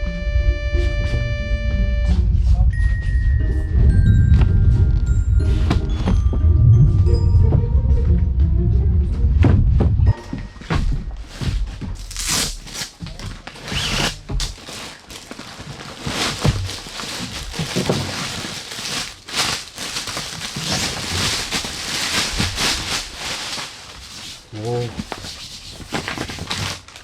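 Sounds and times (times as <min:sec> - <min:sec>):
packaging crinkling and tearing: 0:11.3 - 0:27.0.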